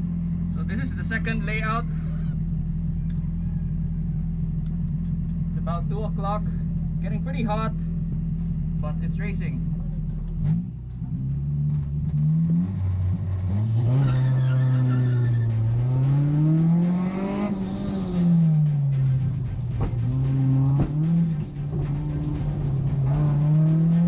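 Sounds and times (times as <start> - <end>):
tire squeal: 0.0 - 24.0
car engine revving hard: 4.9 - 24.0.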